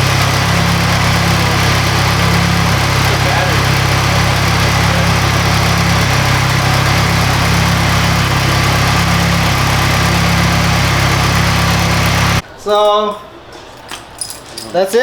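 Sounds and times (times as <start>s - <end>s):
car engine idling: 0.0s - 12.4s.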